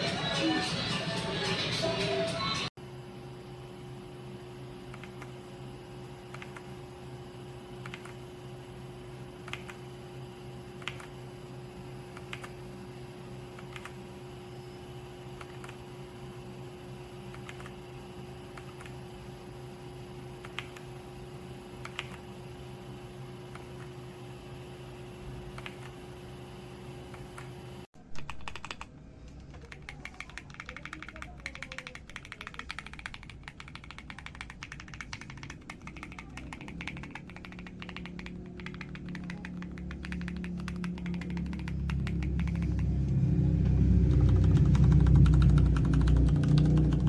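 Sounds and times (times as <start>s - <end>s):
steady hum: 2.8s - 27.9s, 31.8s - 47.0s
mechanical keyboard typing: 6.3s - 6.7s, 7.8s - 8.2s, 9.4s - 9.9s, 10.7s - 11.2s, 12.1s - 12.6s, 13.5s - 14.0s, 15.4s - 15.8s, 17.3s - 17.8s, 18.5s - 19.0s, 20.4s - 20.9s, 21.8s - 22.3s, 25.5s - 26.0s, 28.1s - 43.0s, 44.0s - 47.0s
low rumbling sound: 41.7s - 47.0s.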